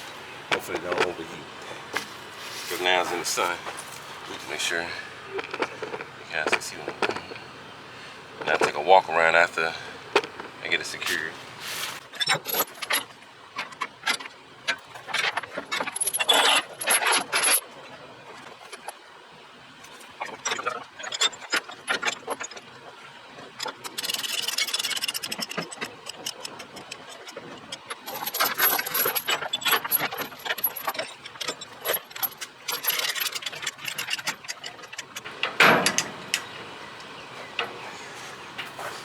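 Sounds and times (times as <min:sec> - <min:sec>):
chains clanking and rattling: 0:12.2 - 0:13.0, 0:15.2 - 0:17.6, 0:24.0 - 0:36.6.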